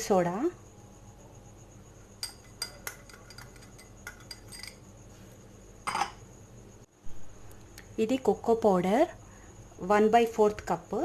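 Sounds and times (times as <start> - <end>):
spoon clinking against bowl: 2.2 - 4.8.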